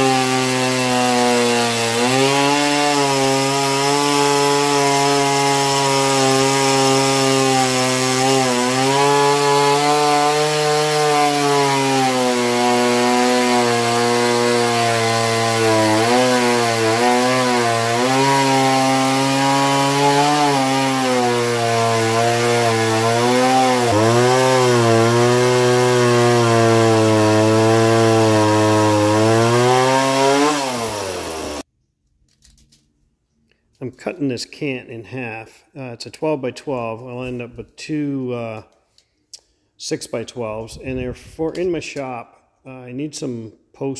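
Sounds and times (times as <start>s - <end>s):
sawmill engine under load: 0.0s - 31.6s.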